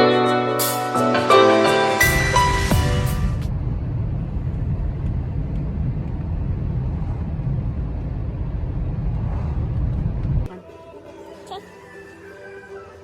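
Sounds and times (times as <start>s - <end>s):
car driving heard from cabin: 3.4s - 10.5s.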